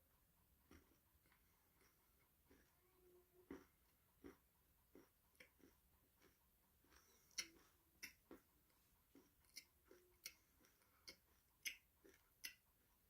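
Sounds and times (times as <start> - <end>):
crunchy snack chewing: 3.5 - 8.5.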